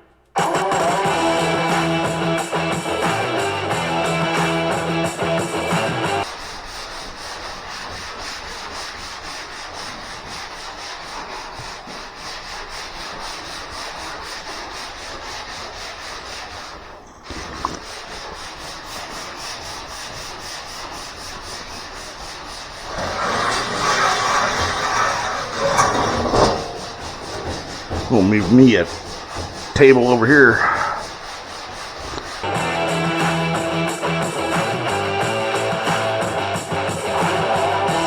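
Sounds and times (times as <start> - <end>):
sandpaper rasping on metal: 6.2 - 33.4.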